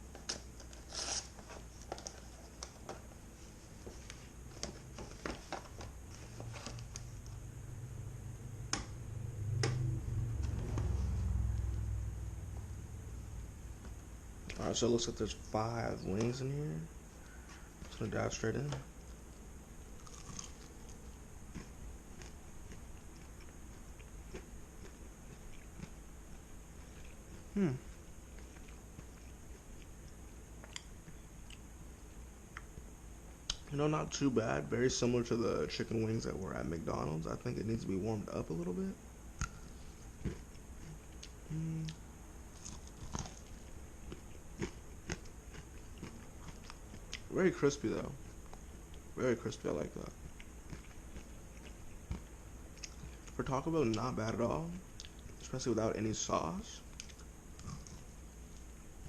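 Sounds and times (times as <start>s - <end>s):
chewing crispy chicken: 19.9s - 31.7s, 39.4s - 47.3s, 50.1s - 53.4s, 56.9s - 58.8s.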